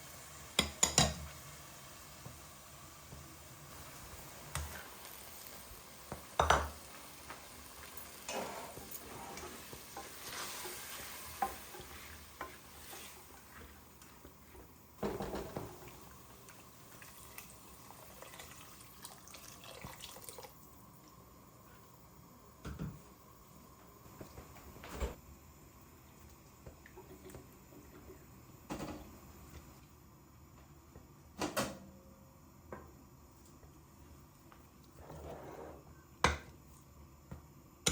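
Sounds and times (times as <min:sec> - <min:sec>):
food sizzling in a pan: 0:00.0 - 0:21.8.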